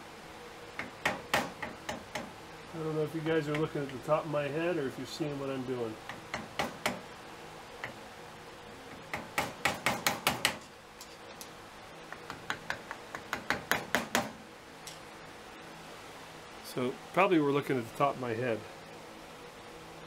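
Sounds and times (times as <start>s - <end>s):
chisel tapping on metal: 3.5s - 4.0s, 12.1s - 14.3s.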